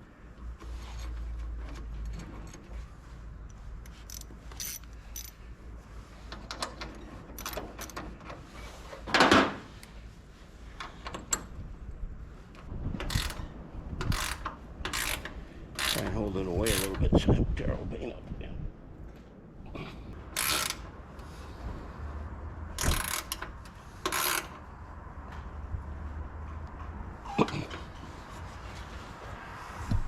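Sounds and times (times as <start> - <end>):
metal tools and bolts clinking: 3.8 - 5.4, 6.4 - 8.4.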